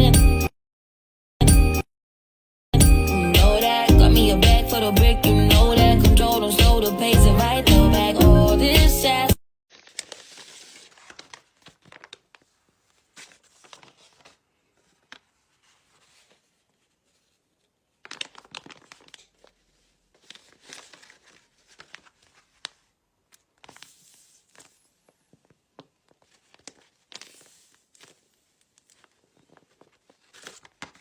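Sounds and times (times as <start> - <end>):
paper crinkling and rustling: 9.7 - 31.0.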